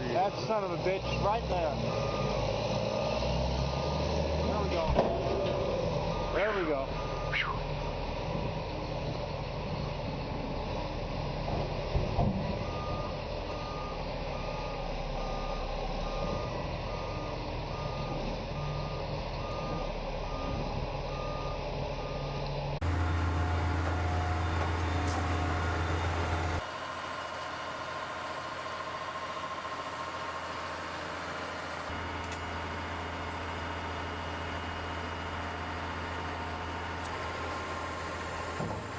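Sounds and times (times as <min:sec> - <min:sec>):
engine drone: 0:00.0 - 0:38.9
reversing alarm beeping: 0:01.9 - 0:03.3, 0:06.0 - 0:07.7, 0:12.6 - 0:26.7
machine running noise: 0:22.8 - 0:34.6.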